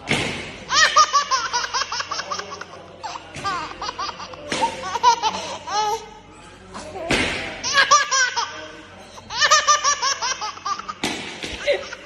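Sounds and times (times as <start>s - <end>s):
baby laughing: 0.7s - 6.0s, 7.6s - 11.0s.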